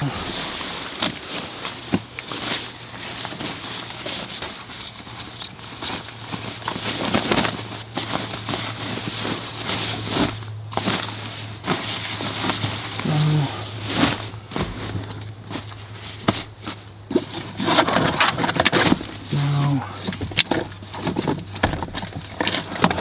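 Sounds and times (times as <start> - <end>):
rustling and knocks of gear: 0.0 - 23.0
faint low hum: 12.6 - 16.8.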